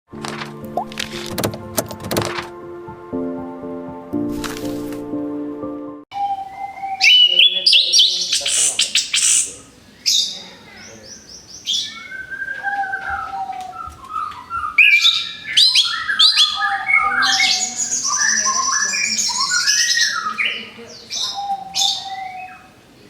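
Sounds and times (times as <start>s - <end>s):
thrush singing whistled song: 6.1s - 9.6s, 11.5s - 22.8s.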